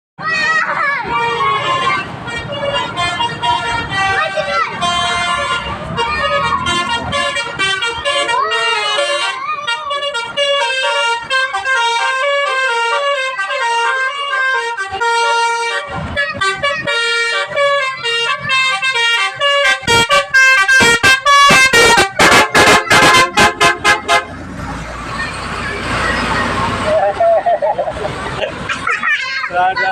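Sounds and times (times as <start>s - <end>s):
multi-tone musical horn: 1.2s - 24.4s.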